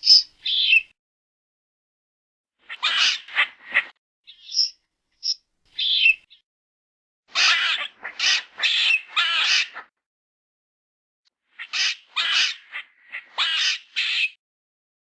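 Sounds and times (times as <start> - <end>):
squirrel harsh calls: 0.0 - 0.8
squirrel high chirps: 0.0 - 0.8, 4.4 - 6.2.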